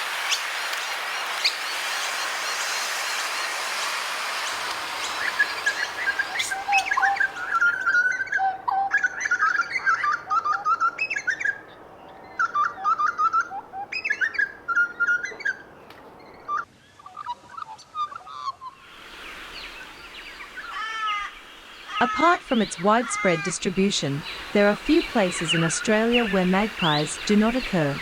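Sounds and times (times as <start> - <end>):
bird whistling gliding notes: 0.0 - 15.6
small birds chirping faintly: 0.0 - 28.0.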